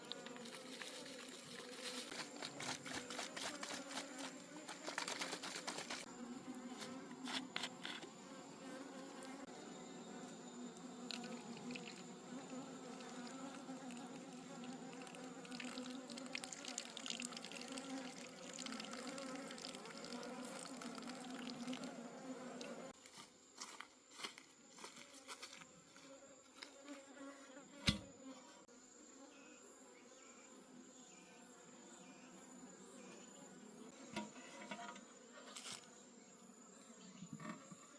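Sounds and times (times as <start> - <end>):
honeybees buzzing: 0.0 - 23.0.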